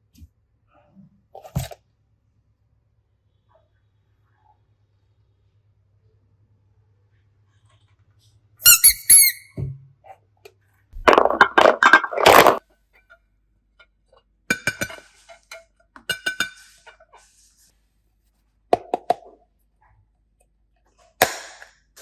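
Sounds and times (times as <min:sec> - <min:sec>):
slime squeaks: 0:08.6 - 0:09.5.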